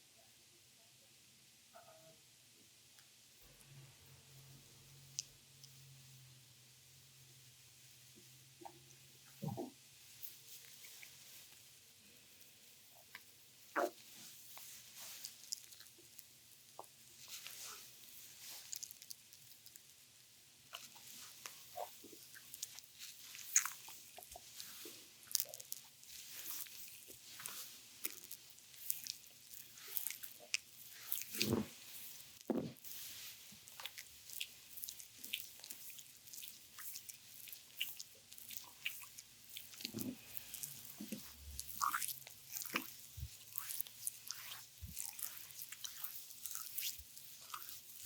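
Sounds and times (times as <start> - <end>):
wet skin on skin squelches: 20.7 - 48.0.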